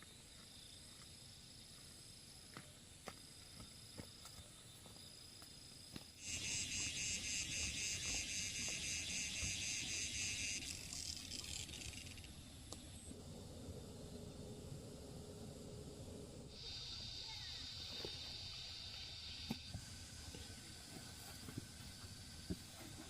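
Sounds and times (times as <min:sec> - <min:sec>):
insect pulsing trill: 0:06.2 - 0:13.2, 0:13.8 - 0:22.8.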